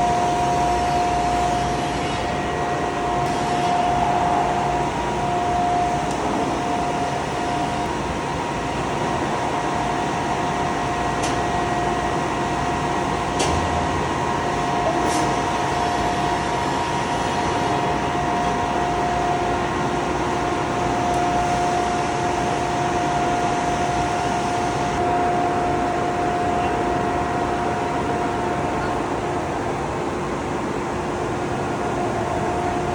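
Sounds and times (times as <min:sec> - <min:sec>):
glass-cutting machine whirring: 0:00.0 - 0:08.0.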